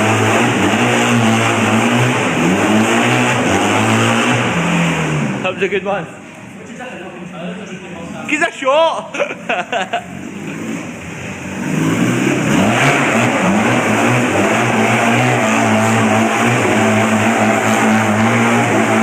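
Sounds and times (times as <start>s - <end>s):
engine revving: 0.0s - 5.7s, 10.2s - 19.0s.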